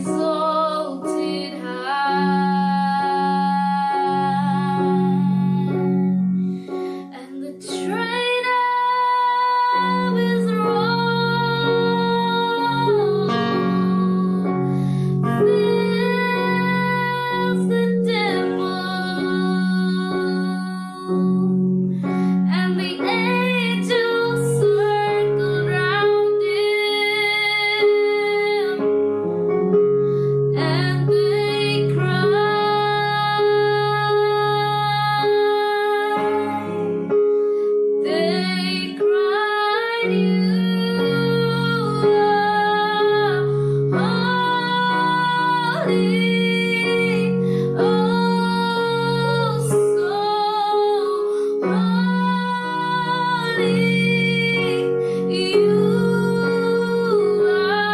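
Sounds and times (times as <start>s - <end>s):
woman singing worship song: 0.0s - 6.1s, 6.9s - 21.5s, 22.2s - 28.8s, 30.5s - 36.8s, 38.0s - 57.9s
electric keyboard chords: 0.0s - 57.9s.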